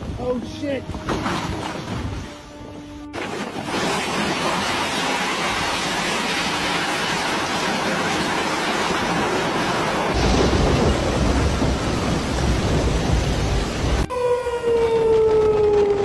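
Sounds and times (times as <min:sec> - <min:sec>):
rain hissing: 0:03.7 - 0:14.1
deep rumble of thunder: 0:10.1 - 0:14.1
siren wailing: 0:13.5 - 0:16.0.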